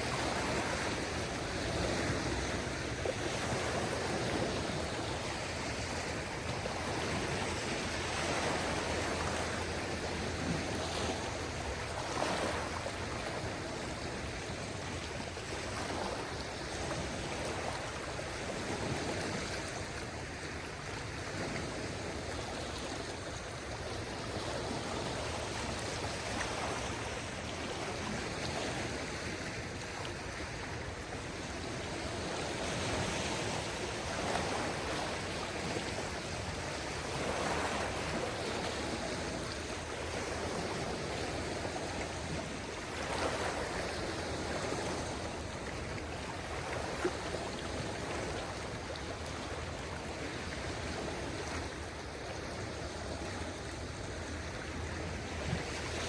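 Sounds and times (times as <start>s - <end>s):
small waves washing ashore: 0.0s - 56.0s.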